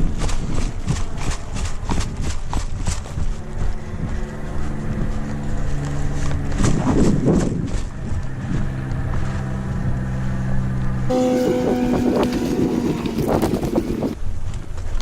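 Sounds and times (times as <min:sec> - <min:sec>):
running footsteps: 0:00.0 - 0:08.4
wind on microphone: 0:00.0 - 0:15.0.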